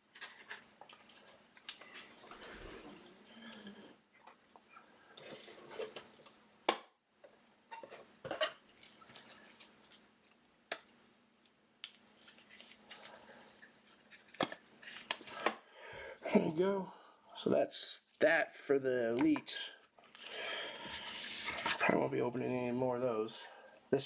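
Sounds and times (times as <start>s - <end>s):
faint steady hum: 0.0s - 24.0s
cards rustling and sliding: 12.0s - 13.3s, 13.9s - 15.5s, 20.1s - 21.9s.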